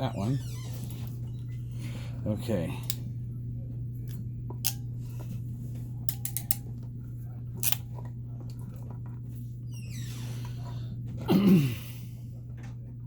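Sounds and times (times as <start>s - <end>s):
steady low hum: 0.0s - 13.0s
small sharp clicks of metal: 6.1s - 6.6s, 7.6s - 7.8s.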